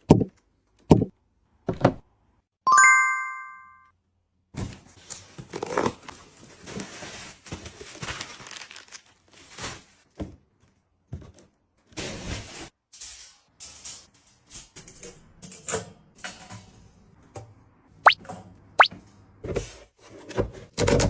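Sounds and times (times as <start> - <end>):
packaging tearing and crinkling: 7.5 - 9.9.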